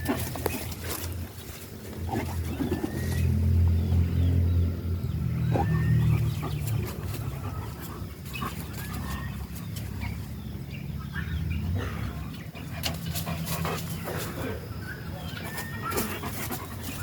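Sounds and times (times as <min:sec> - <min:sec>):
farmyard birds calling: 0:00.0 - 0:17.0.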